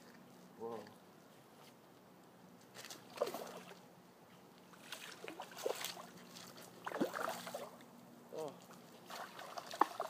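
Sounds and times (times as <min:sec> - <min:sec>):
fish splashing in water: 0:04.8 - 0:07.8, 0:09.0 - 0:10.0.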